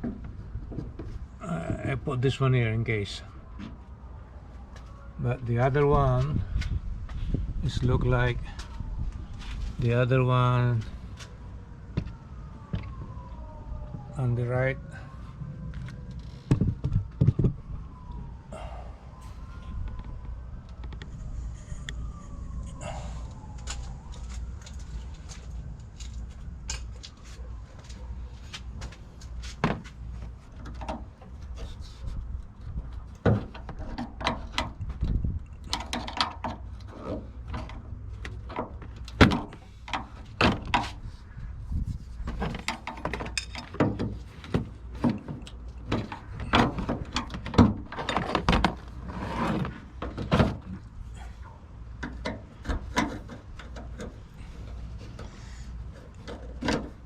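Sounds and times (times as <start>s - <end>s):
distant siren: 0.1s - 53.0s
steady low rumble: 14.8s - 33.2s
metal clicks and knocks: 33.2s - 41.0s, 42.3s - 48.9s, 52.0s - 55.3s.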